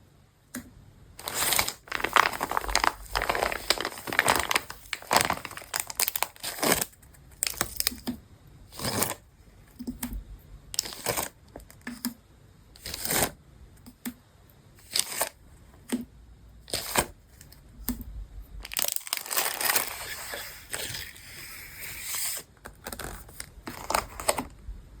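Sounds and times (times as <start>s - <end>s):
paper and packaging crinkling: 1.2s - 8.0s, 10.8s - 11.4s, 18.6s - 24.5s.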